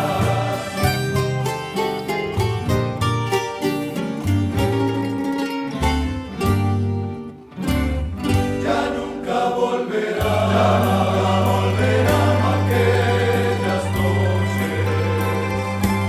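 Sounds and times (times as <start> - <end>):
choir singing: 0.0 - 2.1, 8.3 - 16.0
plucked string ensemble: 0.0 - 16.0.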